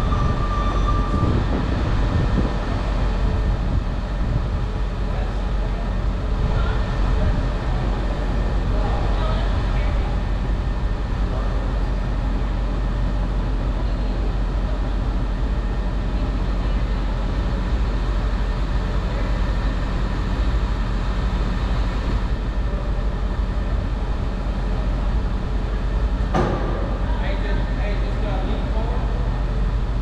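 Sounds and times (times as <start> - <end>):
vehicle engine rumbling: 0.0 - 30.0
single knock: 26.3 - 27.1.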